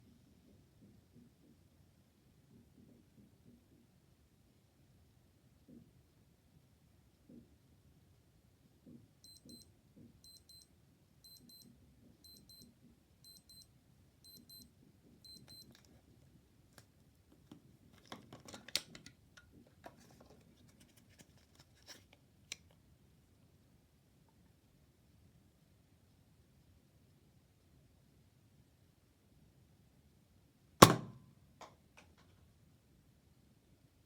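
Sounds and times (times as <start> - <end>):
digital watch alarm beeping: 9.2 - 15.7.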